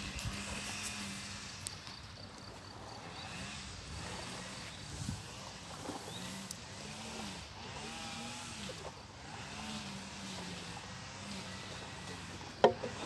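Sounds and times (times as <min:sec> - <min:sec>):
grass cutter engine revving: 0:03.2 - 0:13.0.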